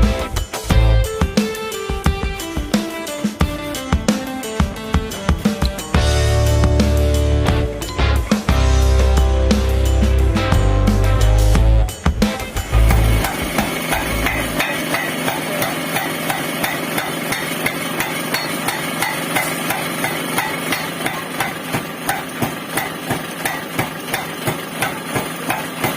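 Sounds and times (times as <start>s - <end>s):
power hammer striking: 12.2s - 25.9s.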